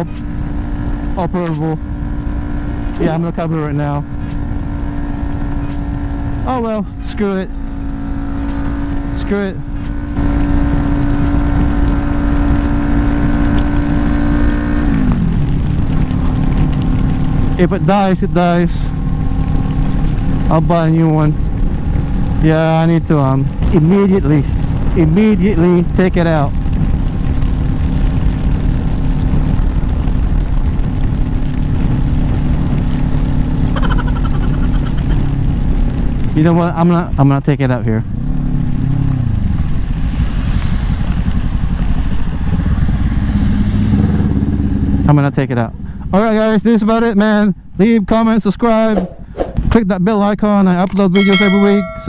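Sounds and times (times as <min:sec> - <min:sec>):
motorcycle engine high-revving: 0:00.0 - 0:23.8, 0:40.7 - 0:45.2
wind rush on microphone: 0:00.0 - 0:37.4, 0:38.0 - 0:45.0, 0:48.7 - 0:49.8
wind rush: 0:39.0 - 0:45.0, 0:48.8 - 0:49.7.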